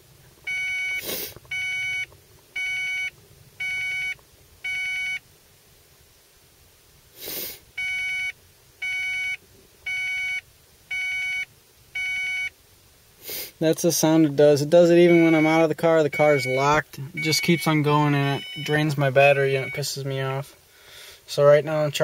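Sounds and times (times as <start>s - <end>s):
electronic warning chime beeping: 0.5s - 5.2s, 7.8s - 11.4s, 12.0s - 12.5s, 15.0s - 20.2s.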